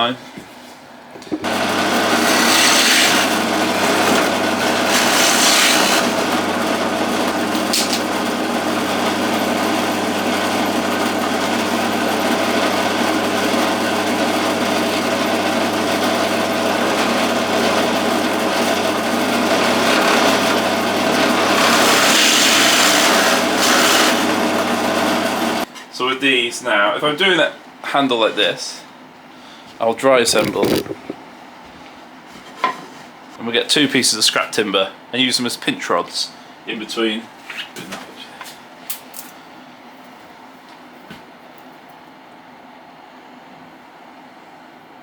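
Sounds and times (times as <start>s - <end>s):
power drill boring into wood: 1.5s - 25.6s.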